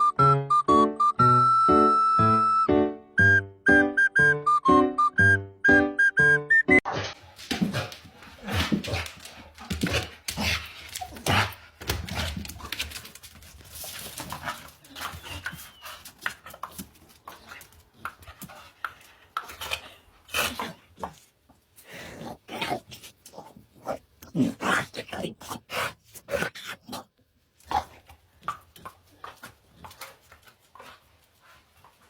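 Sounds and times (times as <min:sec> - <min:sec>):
dog panting: 0:28.9 - 0:32.0.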